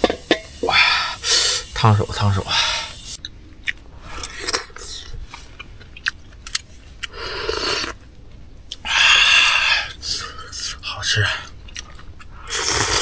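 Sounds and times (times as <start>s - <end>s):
person biting and chewing: 3.6s - 8.0s.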